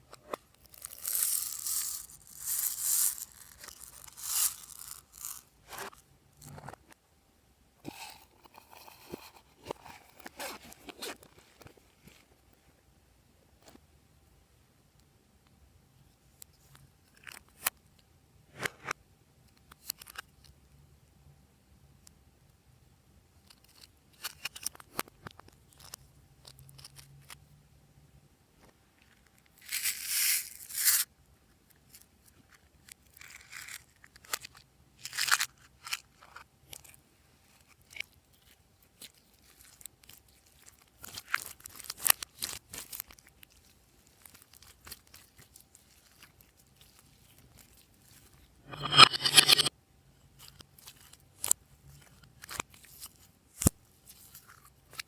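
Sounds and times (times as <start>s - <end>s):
crinkly rustle: 31.8s - 48.5s, 50.4s - 55.0s.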